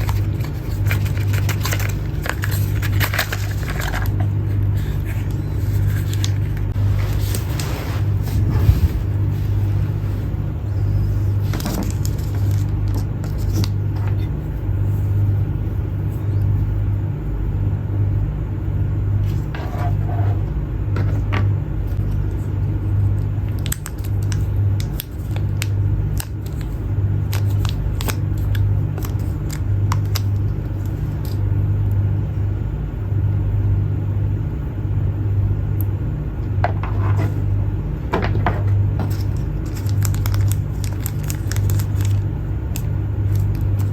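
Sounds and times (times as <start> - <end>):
packaging clicks and rustles: 0.0 - 7.6, 11.4 - 14.3, 23.2 - 31.4, 39.0 - 43.9
steady low hum: 0.0 - 43.9.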